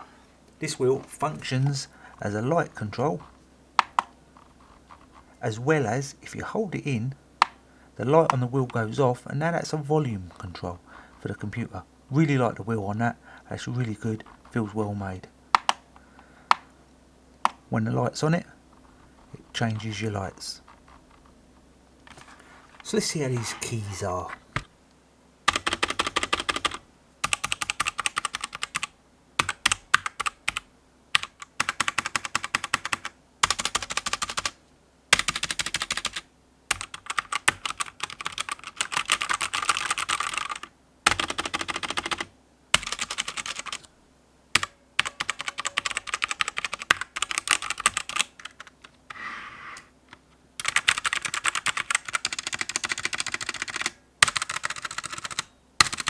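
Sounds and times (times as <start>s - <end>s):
mechanical keyboard clacking: 25.5s - 30.6s, 31.2s - 34.6s, 35.2s - 43.9s, 44.6s - 48.7s, 50.6s - 56.0s.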